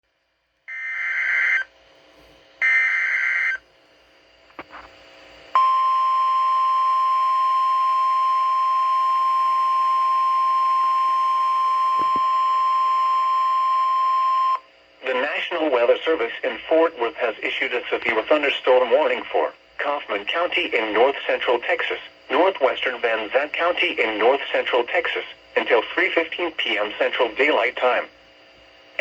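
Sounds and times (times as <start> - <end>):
steady single-pitch alarm tone: 0.7 - 1.7, 2.6 - 3.6, 5.5 - 14.7.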